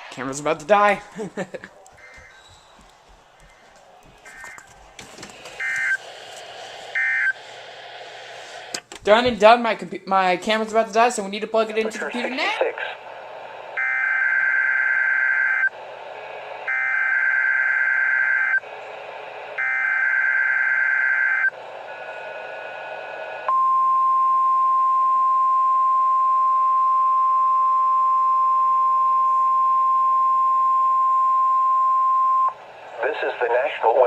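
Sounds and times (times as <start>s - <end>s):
steady single-pitch alarm tone: 5.6s - 6.0s, 6.9s - 7.4s, 13.8s - 15.7s, 16.7s - 18.6s, 19.6s - 21.6s
two-pitch buzzing data bursts: 5.6s - 6.0s, 6.9s - 7.4s.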